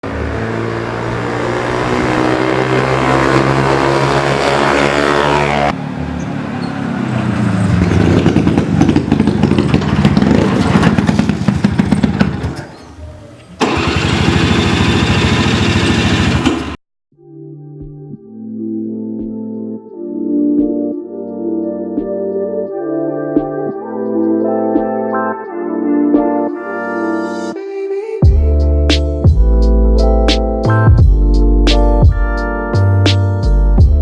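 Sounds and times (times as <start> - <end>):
scooter engine revving: 0.0 - 16.8.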